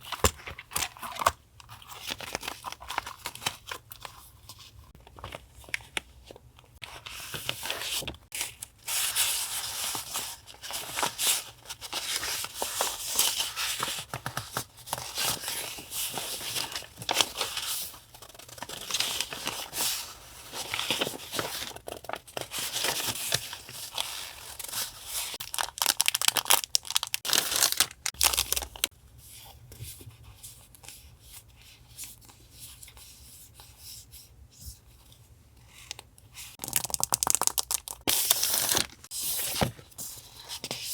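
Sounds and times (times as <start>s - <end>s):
packaging tearing and crinkling: 25.4s - 28.9s, 36.6s - 39.1s.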